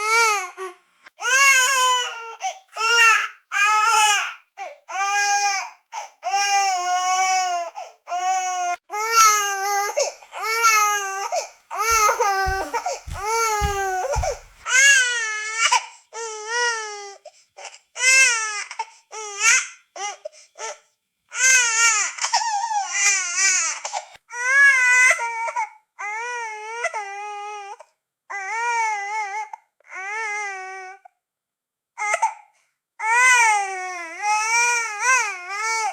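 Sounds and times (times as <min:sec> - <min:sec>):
baby crying: 0:00.0 - 0:20.2
low thumps: 0:11.8 - 0:14.6.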